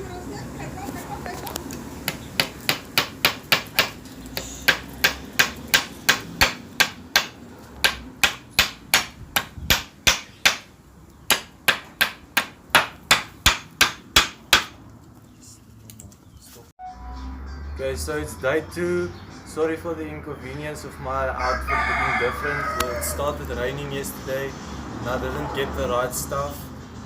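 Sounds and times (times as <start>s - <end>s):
hammer driving nails into wood: 11.3s - 14.8s.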